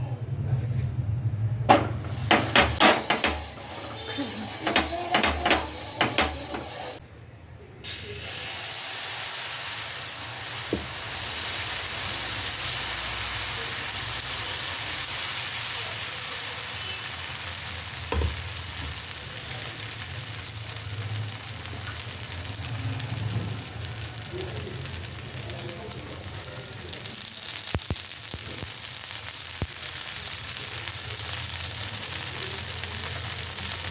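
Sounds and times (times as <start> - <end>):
food sizzling in a pan: 2.0 - 7.0, 7.8 - 33.9.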